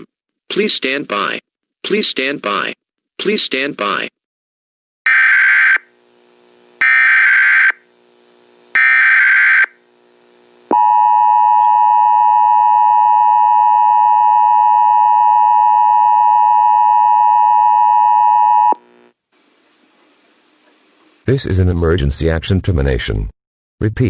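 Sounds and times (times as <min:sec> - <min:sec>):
data signal bursts: 0:08.8 - 0:09.7.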